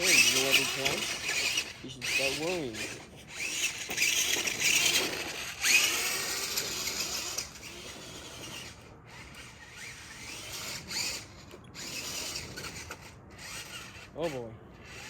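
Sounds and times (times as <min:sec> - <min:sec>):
toy truck electric motor whining: 0:00.0 - 0:15.0.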